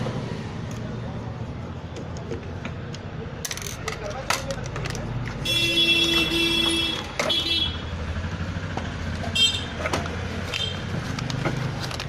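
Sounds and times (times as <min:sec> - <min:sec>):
road traffic rumbling: 0:00.0 - 0:12.0
vehicle horn honking: 0:05.4 - 0:07.9, 0:09.3 - 0:09.7.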